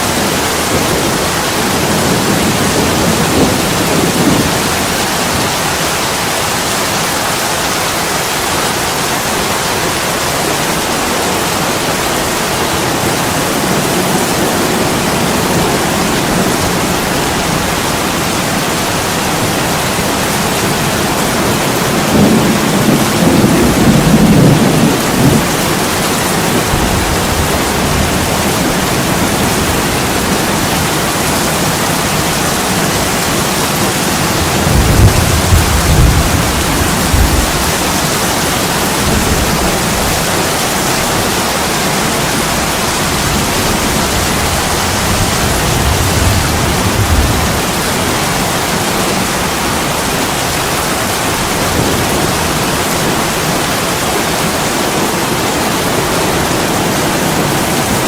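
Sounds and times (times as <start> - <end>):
heavy rain on a window: 0.0 - 58.0
low rolls of thunder: 21.2 - 33.3, 34.2 - 40.6, 43.1 - 48.7.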